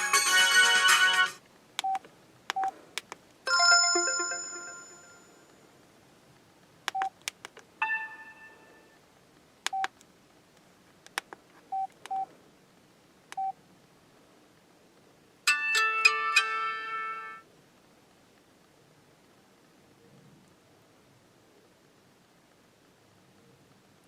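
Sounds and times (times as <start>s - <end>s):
keypad beeps: 1.8s - 2.7s, 6.9s - 7.1s, 9.7s - 9.9s, 11.7s - 12.3s
multi-note phone tone: 3.5s - 5.5s, 7.8s - 9.0s
phone chime: 3.5s - 5.5s, 7.8s - 9.0s.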